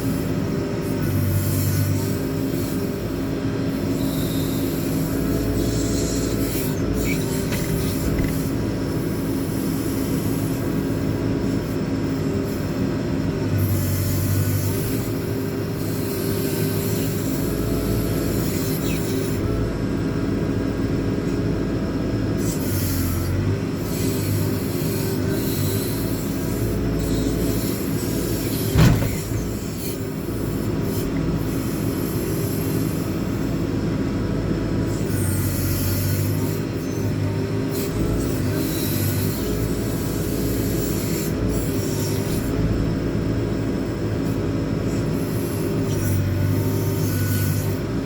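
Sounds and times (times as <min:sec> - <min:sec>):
diesel engine running under load: 0:00.0 - 0:48.0
hydraulics working: 0:05.3 - 0:09.2, 0:26.7 - 0:31.7.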